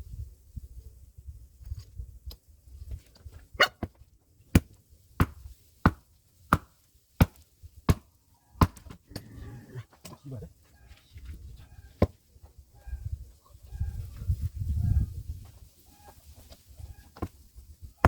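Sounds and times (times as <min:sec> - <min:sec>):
hand axe striking firewood: 0:03.6 - 0:09.0.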